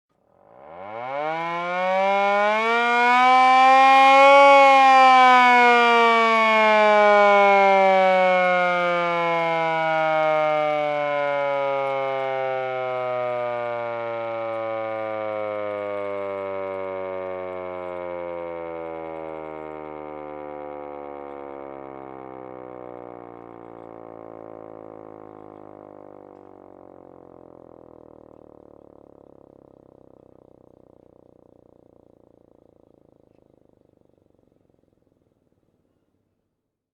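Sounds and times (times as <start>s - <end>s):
hand-crank siren wailing: 0.4s - 29.3s.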